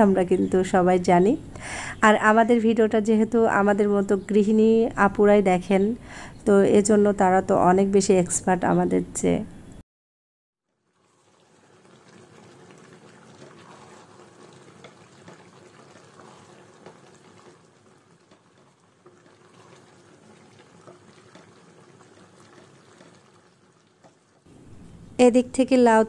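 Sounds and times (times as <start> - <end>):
curry sizzling and bubbling: 10.6 - 25.2.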